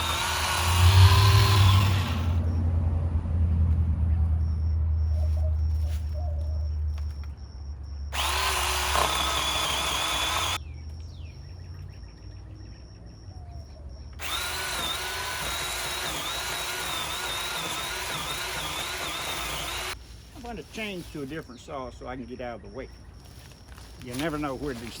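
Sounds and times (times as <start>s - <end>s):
electric saw cutting wood: 0.0s - 2.5s, 8.2s - 10.6s, 14.2s - 20.0s.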